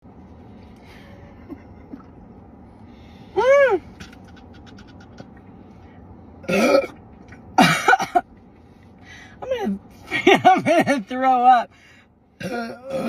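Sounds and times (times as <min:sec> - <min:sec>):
woman burping: 0:06.4 - 0:06.9, 0:12.4 - 0:13.0.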